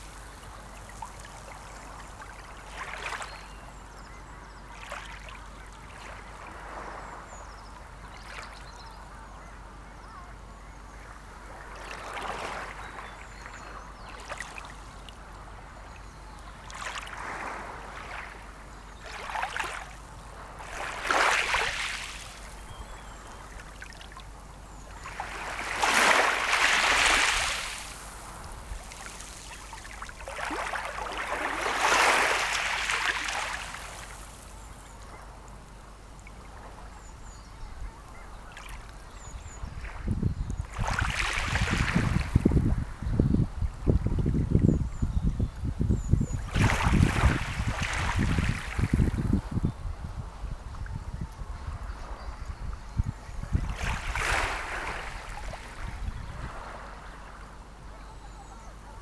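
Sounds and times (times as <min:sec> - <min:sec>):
sea waves washing on shore: 0:16.8 - 0:22.7, 0:25.0 - 0:35.6.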